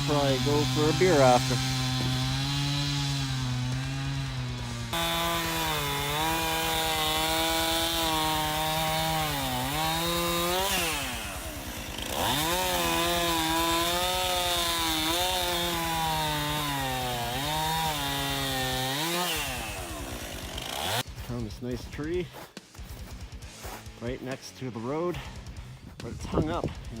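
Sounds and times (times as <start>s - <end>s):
chainsaw cutting logs: 0.0s - 25.6s.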